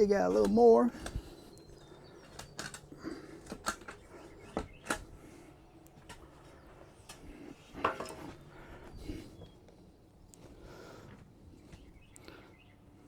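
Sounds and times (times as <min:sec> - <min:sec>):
digging tool scraping soil: 0:00.0 - 0:01.3.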